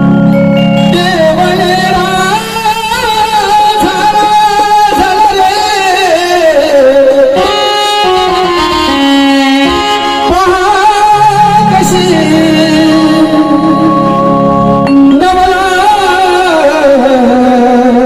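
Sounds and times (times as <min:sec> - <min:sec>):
folk song playing loudly: 0:00.0 - 0:18.0.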